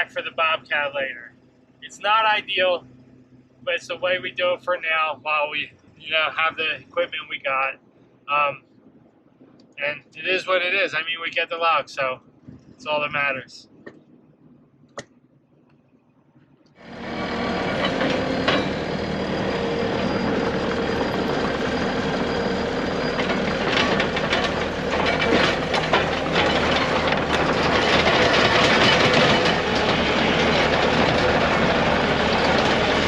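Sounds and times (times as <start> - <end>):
heavy vehicle engine running: 0.0 - 8.2, 16.8 - 33.0
metallic rattling and clanking: 16.8 - 33.0.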